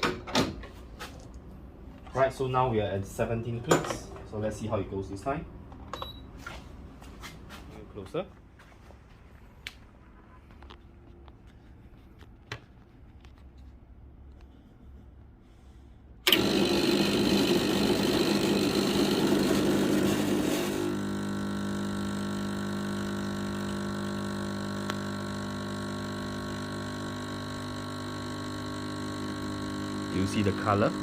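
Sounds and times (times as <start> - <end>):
espresso machine pump humming: 16.3 - 31.0.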